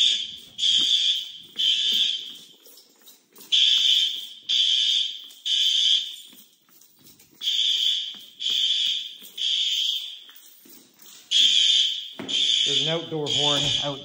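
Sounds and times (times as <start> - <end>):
fire alarm horn blasts: 0.0 - 2.6, 3.5 - 6.3, 7.4 - 10.2, 11.3 - 14.0.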